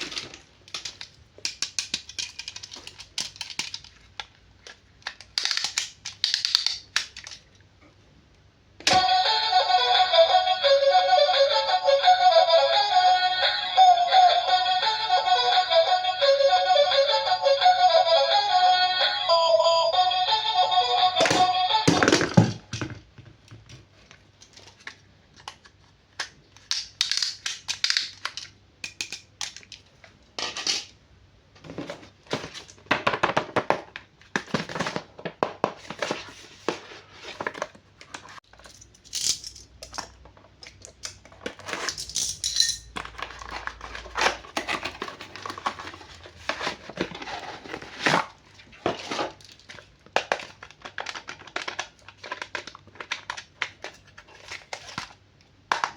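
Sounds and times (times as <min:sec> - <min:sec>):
toys clicking and knocking: 0:00.0 - 0:07.4, 0:26.2 - 0:29.8
plastic packaging crinkling: 0:43.0 - 0:55.2.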